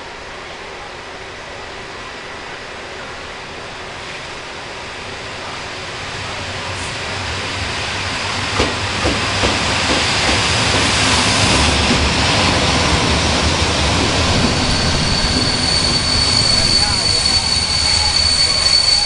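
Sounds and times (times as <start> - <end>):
train wheels and carriages rushing: 1.4 - 19.0
wheels clacking over rail joints: 8.5 - 14.7
high steady squeal: 12.6 - 19.0.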